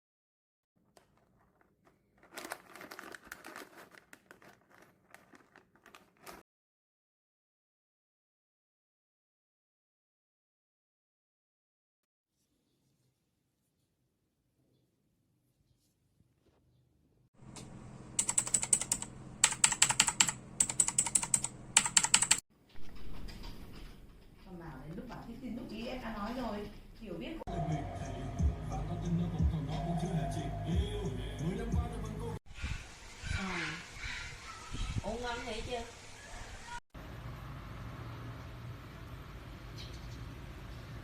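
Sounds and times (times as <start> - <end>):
plastic packaging crinkling: 0.8 - 6.4
mechanical keyboard key clicks: 18.2 - 22.4.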